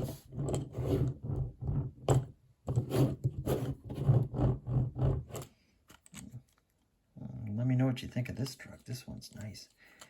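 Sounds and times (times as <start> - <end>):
toy truck rubbing and knocking: 0.0 - 5.5.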